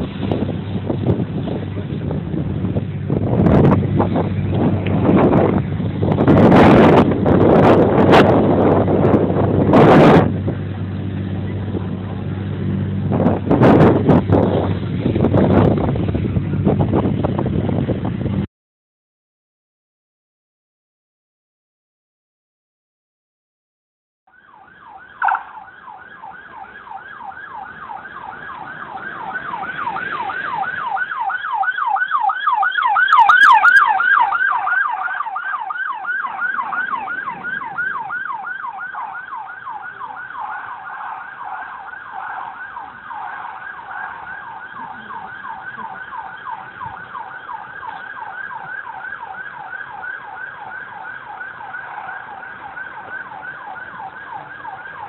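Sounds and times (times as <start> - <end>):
electronic siren yelping: 24.3 - 55.0.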